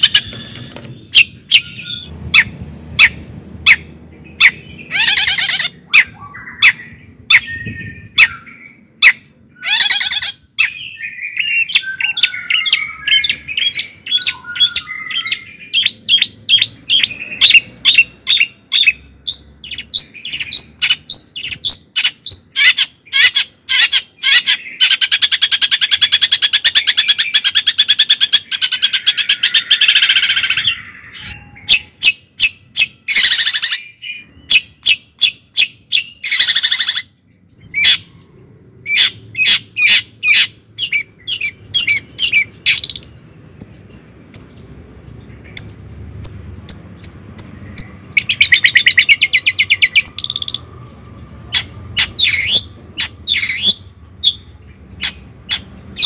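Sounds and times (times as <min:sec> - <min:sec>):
bird chirping and trilling: 0:00.0 - 0:56.0.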